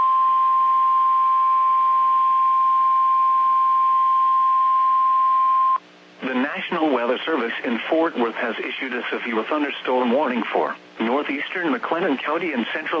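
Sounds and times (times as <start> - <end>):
steady warning alarm beep: 0.0 - 5.8.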